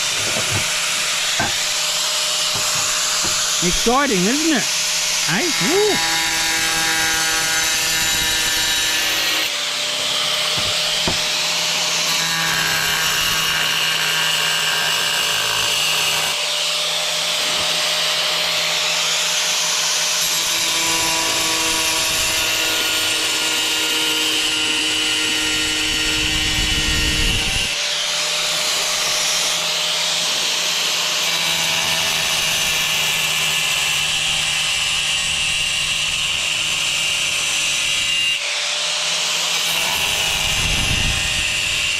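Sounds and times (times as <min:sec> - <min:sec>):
angle grinder grinding tile: 0:00.0 - 0:16.4.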